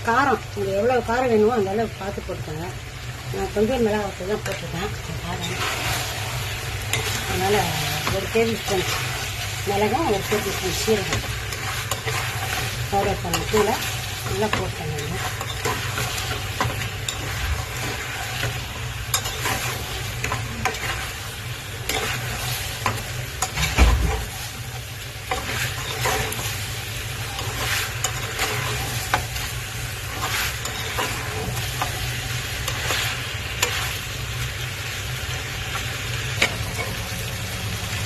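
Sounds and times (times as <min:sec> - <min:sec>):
food sizzling in a pan: 0:00.0 - 0:38.0
spoon scraping a pan: 0:04.4 - 0:34.1.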